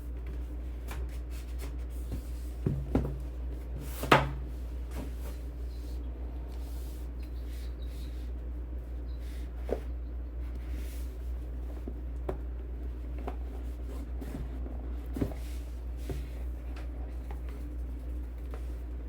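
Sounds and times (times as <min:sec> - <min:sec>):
steady low hum: 0:00.0 - 0:19.0
taps and knocks of handling: 0:00.2 - 0:03.3.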